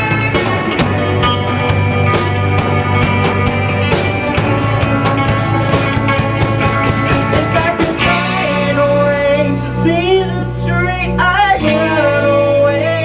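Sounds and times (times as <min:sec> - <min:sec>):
drums and cymbals: 0:00.0 - 0:12.9
rock band playing: 0:00.0 - 0:13.0
person singing: 0:07.0 - 0:13.0.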